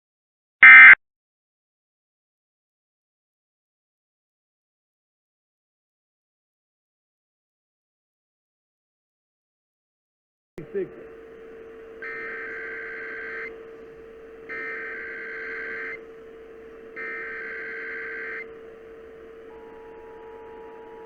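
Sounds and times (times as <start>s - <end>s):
two-tone attention signal: 0.6s - 1.0s, 10.6s - 21.0s
steady hum: 10.6s - 21.0s
warbling data tones: 10.6s - 21.0s.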